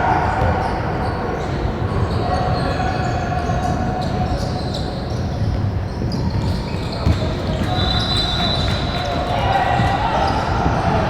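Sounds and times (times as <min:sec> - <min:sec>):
spectator chatter echoing: 0:00.0 - 0:11.0
footsteps: 0:05.5 - 0:11.0
basketball bouncing on hardwood: 0:06.4 - 0:10.0.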